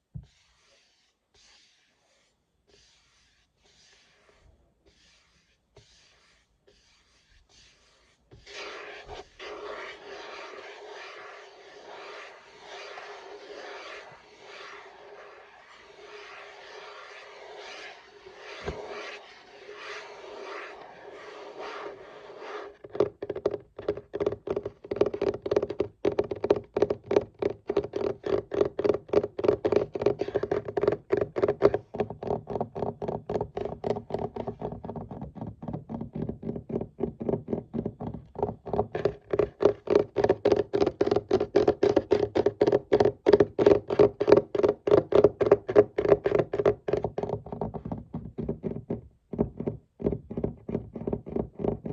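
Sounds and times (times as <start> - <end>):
scratching on a desk: 0.1 - 51.9
rapid tapping on a desk: 22.4 - 51.9.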